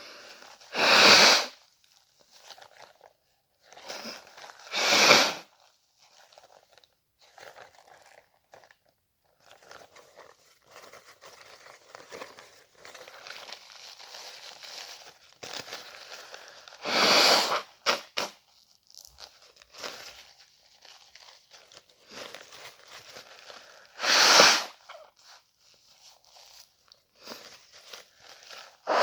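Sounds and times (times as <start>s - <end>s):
paper tissue crinkling: 0.0s - 0.8s, 1.5s - 29.0s
nose blowing: 0.7s - 1.6s, 4.7s - 5.5s, 16.8s - 18.0s, 24.0s - 25.0s.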